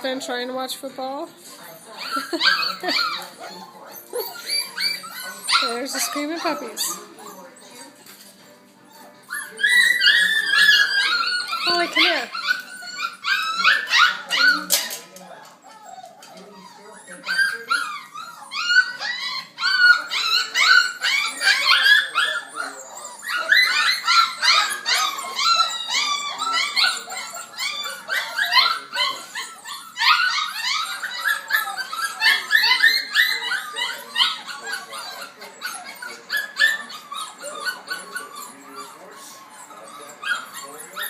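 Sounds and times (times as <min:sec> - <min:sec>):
puppies whining and yipping: 0:01.1 - 0:41.0.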